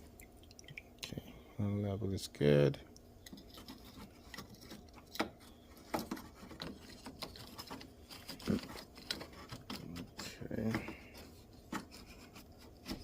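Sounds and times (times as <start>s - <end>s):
parts clicking and rustling in hand: 3.2s - 13.0s.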